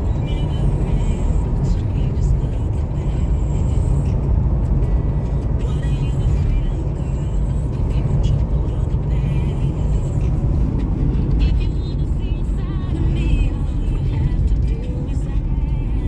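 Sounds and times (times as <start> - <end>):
car engine and tyre noise: 0.0 - 16.0.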